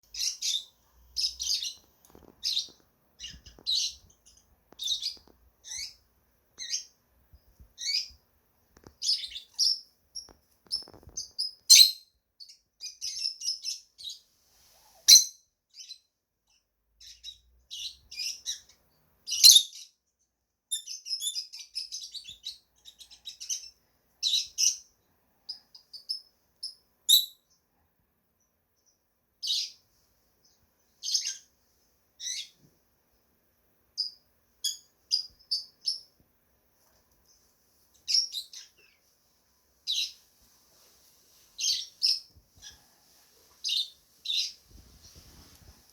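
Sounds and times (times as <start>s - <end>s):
lovebirds chirping: 0.0s - 7.0s, 7.6s - 8.2s, 8.8s - 14.2s, 14.8s - 16.1s, 25.5s - 27.6s, 30.4s - 31.6s, 32.2s - 32.6s, 34.0s - 36.2s, 37.2s - 39.1s, 39.8s - 40.3s, 41.3s - 42.9s, 43.5s - 45.6s.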